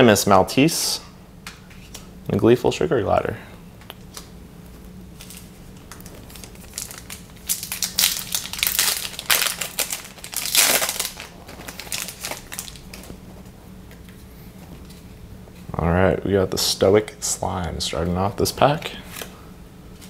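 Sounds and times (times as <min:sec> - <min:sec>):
wrapper crinkling and tearing: 0:05.2 - 0:13.2.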